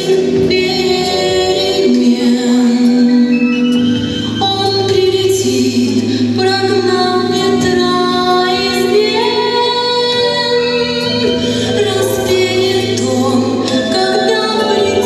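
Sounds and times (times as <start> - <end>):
instrumental accompaniment: 0.0 - 15.0
voices singing held notes: 8.6 - 15.0.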